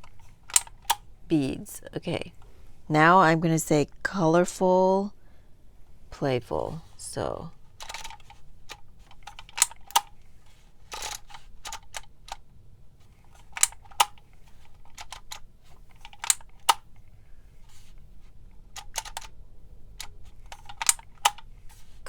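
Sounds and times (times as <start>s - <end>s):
label maker plastic clicks: 0.0s - 1.1s, 7.7s - 12.5s, 13.1s - 17.1s, 18.6s - 22.0s.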